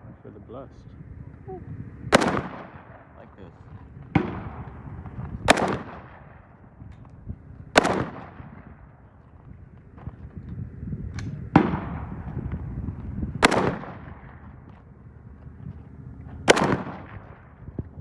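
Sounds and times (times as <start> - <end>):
rifle shots with echo: 2.0 - 6.9, 7.6 - 9.2, 11.2 - 12.4, 13.4 - 14.8, 16.2 - 17.9.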